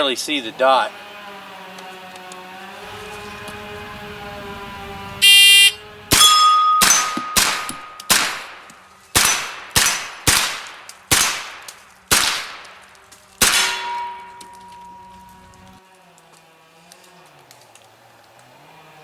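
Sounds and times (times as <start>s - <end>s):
steel plates ringing: 6.1s - 8.2s, 13.4s - 15.4s
rifle gunshots: 6.1s - 14.3s.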